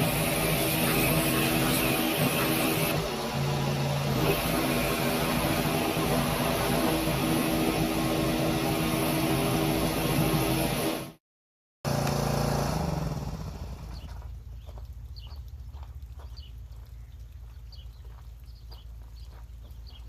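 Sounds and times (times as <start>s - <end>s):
engine running: 0.0s - 11.2s, 11.9s - 16.2s.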